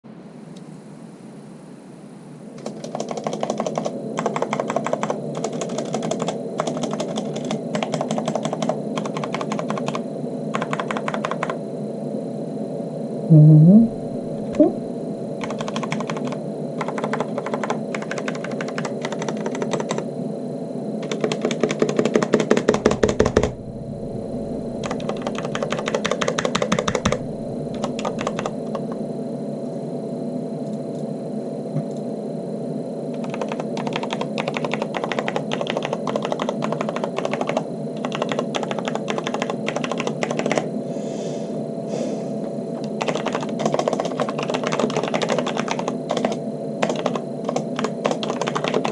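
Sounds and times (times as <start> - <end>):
mechanical keyboard typing: 2.6 - 11.6, 15.4 - 20.0, 21.0 - 23.6, 24.8 - 29.0, 33.1 - 40.7, 42.8 - 48.9.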